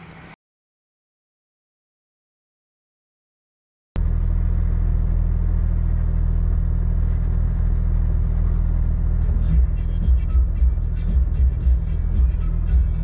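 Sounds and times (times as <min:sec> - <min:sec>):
vehicle cabin rumble: 0:04.0 - 0:13.0
music with a beat: 0:09.2 - 0:13.0.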